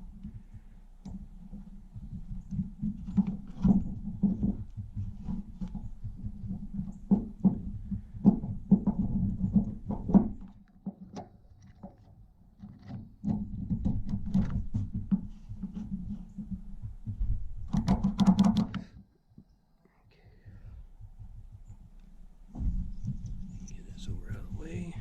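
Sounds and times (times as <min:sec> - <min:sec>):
small clicks and knocks of parts: 0:00.2 - 0:16.6.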